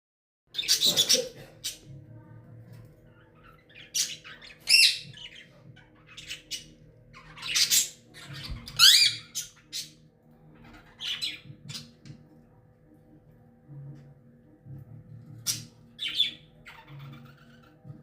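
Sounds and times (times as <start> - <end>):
parakeet squawking: 0.5 - 1.9, 3.1 - 12.0, 15.4 - 18.0.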